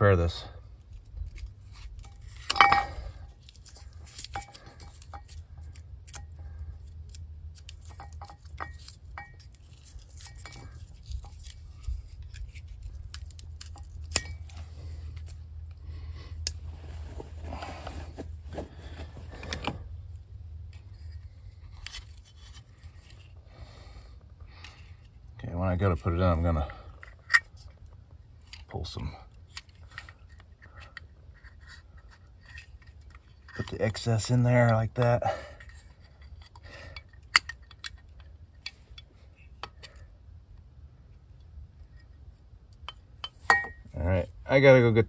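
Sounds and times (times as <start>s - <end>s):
steady low hum: 0.0s - 45.0s
clicks and rattles of small parts: 0.8s - 16.6s, 26.6s - 40.0s.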